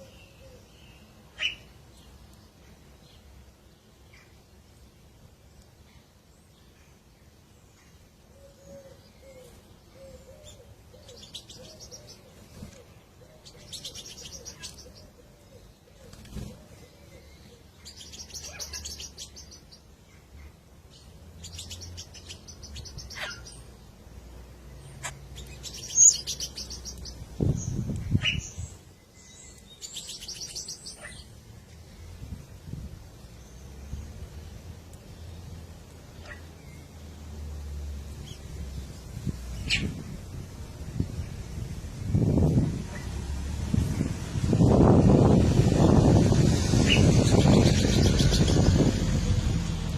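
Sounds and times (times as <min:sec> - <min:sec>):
bird cooing: 0:00.0 - 0:00.7, 0:08.4 - 0:13.8, 0:14.8 - 0:17.7
rapid high-pitched bird chirping: 0:13.5 - 0:15.1, 0:17.8 - 0:19.9, 0:21.4 - 0:23.7, 0:25.0 - 0:28.6, 0:29.7 - 0:31.3, 0:45.9 - 0:48.9.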